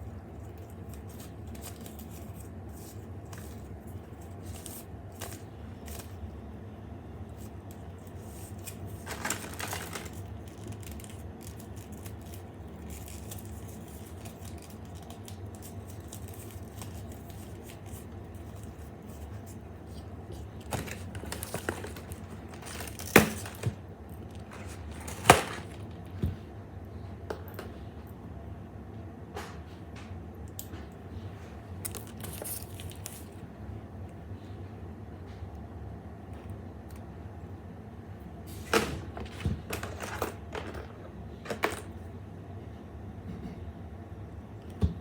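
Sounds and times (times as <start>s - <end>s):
low steady hum: 0.0s - 45.0s
clicks and knocks of handled objects: 7.4s - 26.4s, 38.7s - 42.0s.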